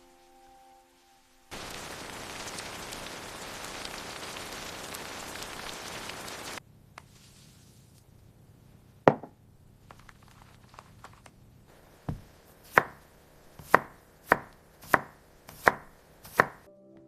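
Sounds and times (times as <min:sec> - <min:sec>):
rain falling on a surface: 0:00.1 - 0:07.6, 0:09.9 - 0:16.6
piano notes: 0:16.7 - 0:17.0.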